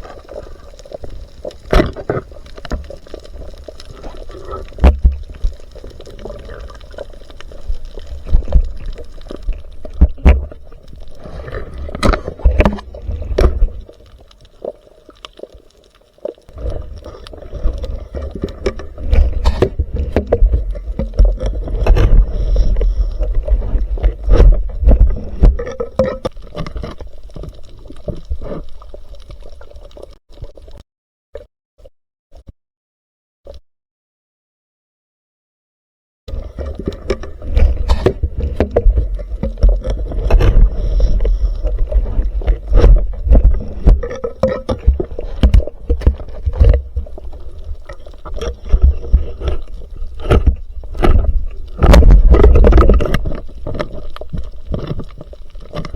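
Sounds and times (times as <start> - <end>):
water gurgling and sloshing: 0.0 - 30.8, 36.3 - 55.9
rough low rumble: 16.5 - 26.2, 36.5 - 53.8
sharp knocks and plops: 41.7 - 47.1.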